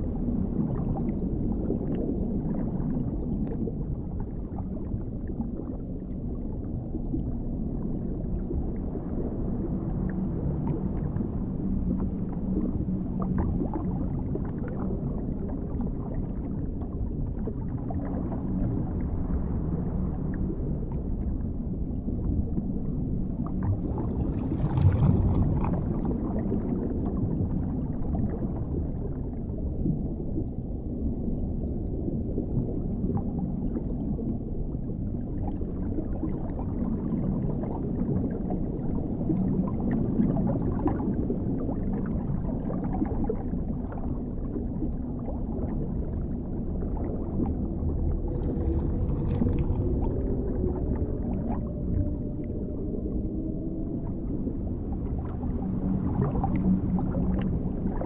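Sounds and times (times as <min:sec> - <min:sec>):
low underwater rumble: 0:00.0 - 0:58.0
muffled gurgling and bubbling: 0:00.0 - 0:58.0.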